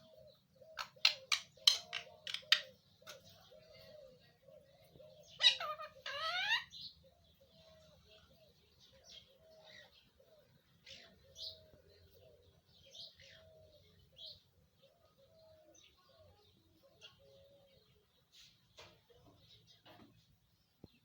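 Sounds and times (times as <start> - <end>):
soft low cooing: 2.1 - 18.2
high bird chirps: 5.2 - 7.0.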